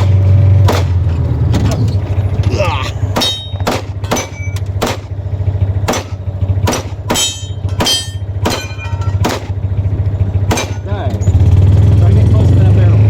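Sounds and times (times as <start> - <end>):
vehicle engine idling: 0.0 - 13.0
short metallic ring: 3.2 - 4.7, 7.1 - 9.3
handgun shots: 3.2 - 5.1, 5.9 - 9.5, 10.5 - 10.8.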